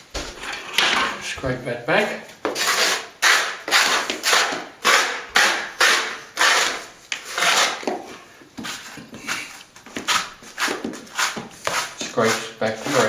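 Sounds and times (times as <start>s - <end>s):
blade scraping plaster: 2.4s - 13.0s.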